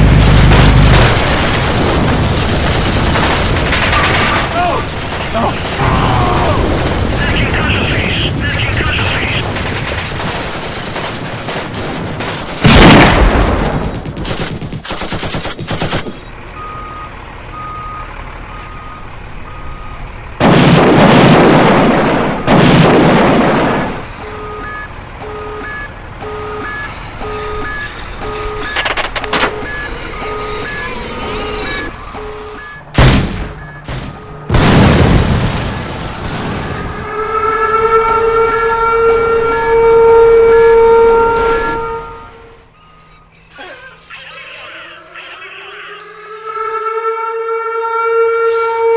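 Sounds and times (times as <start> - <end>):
toy explosion blasts: 12.6 - 14.1, 32.9 - 37.0
repeating electronic beep: 24.1 - 34.5, 42.6 - 43.5
two-tone alternating beep: 24.3 - 32.9
toy gunfire crackle: 27.5 - 32.0.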